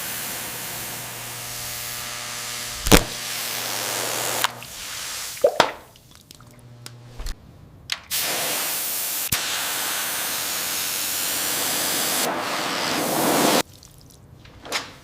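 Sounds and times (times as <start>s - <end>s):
hissing spray jet: 0.0s - 5.5s, 8.1s - 13.6s.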